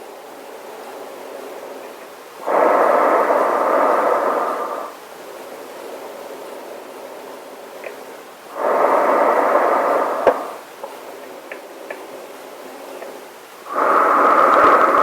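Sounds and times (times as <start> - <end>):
faint steady hiss: 0.0 - 15.0
breath through gas mask: 2.4 - 5.0, 8.5 - 10.7, 13.6 - 15.0.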